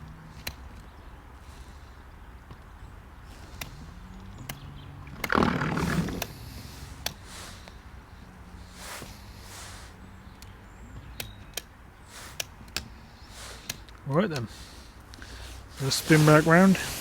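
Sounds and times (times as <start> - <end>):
loud rushing noise: 15.8 - 17.0.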